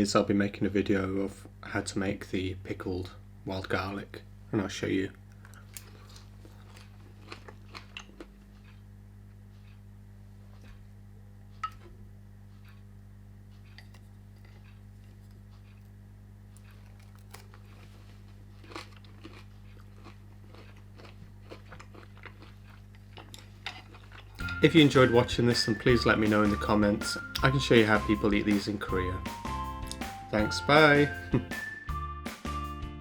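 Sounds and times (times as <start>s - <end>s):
steady low hum: 0.0s - 32.0s
person chewing and crunching food: 5.3s - 9.8s, 12.5s - 12.9s, 13.5s - 25.4s, 29.8s - 30.2s.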